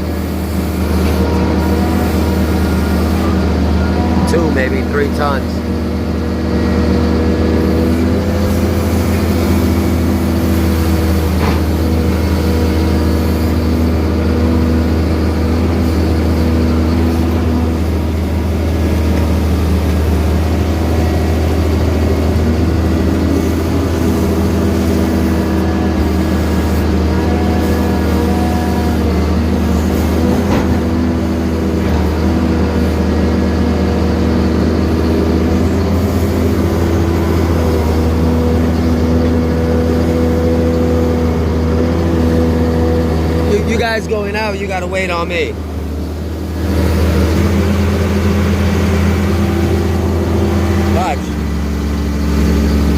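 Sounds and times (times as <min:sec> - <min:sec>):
excavator diesel engine running: 0:00.0 - 0:52.9.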